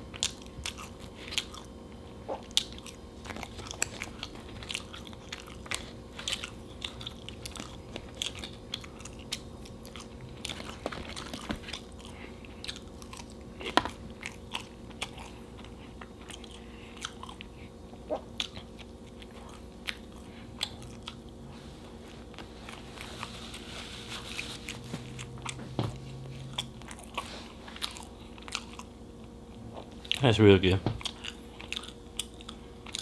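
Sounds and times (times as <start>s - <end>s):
crunchy biting and chewing: 0.1s - 30.3s, 31.0s - 33.0s.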